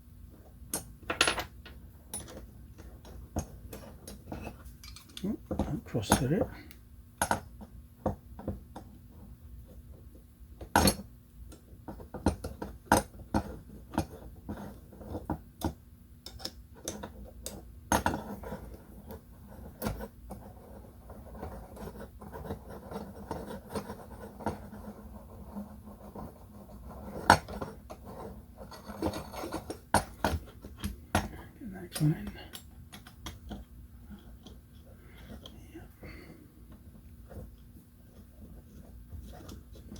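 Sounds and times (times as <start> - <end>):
metal parts and tools clinking: 4.8 - 5.2.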